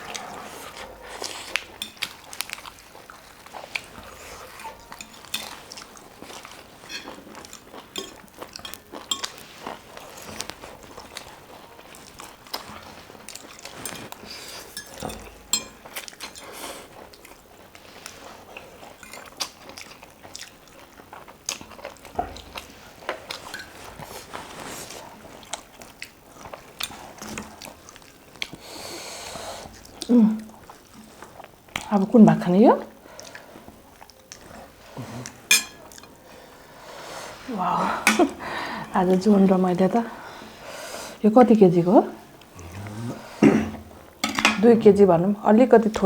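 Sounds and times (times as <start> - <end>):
chewing and biting food: 0.0 - 28.6, 29.6 - 31.9, 33.0 - 36.3
cutlery clinking on dishes: 1.7 - 2.6, 4.0 - 10.6, 12.0 - 16.7, 23.3 - 23.8, 35.4 - 36.2, 44.2 - 44.7.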